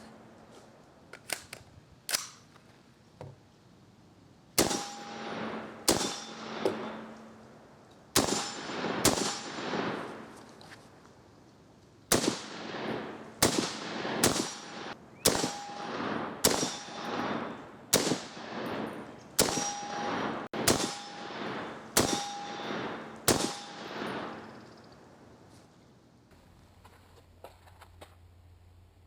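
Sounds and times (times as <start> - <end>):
rifle shots echoing: 4.6 - 7.2, 8.2 - 10.4, 12.1 - 24.7
ringing tone: 19.6 - 21.4, 22.0 - 24.4.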